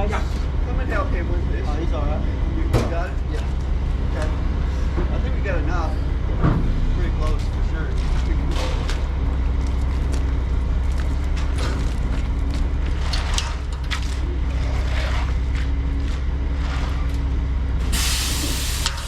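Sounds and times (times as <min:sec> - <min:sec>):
diesel engine rumbling: 0:00.0 - 0:19.0
short knocks and scrapes: 0:12.8 - 0:17.1.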